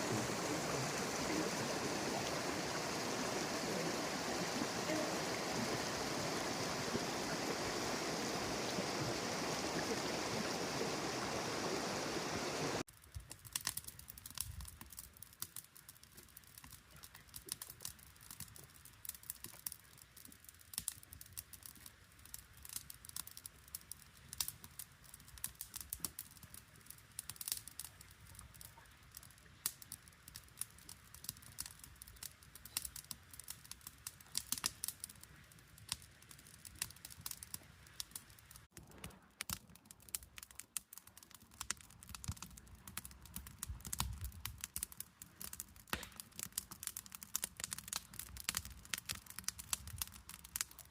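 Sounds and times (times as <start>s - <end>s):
stream flowing: 0.0s - 12.8s
sharp crackles and clicks: 12.9s - 50.9s.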